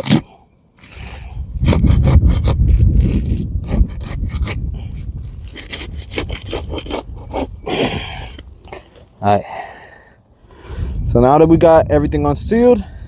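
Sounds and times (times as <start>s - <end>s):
shingle scraping and rasping: 0.0s - 9.2s.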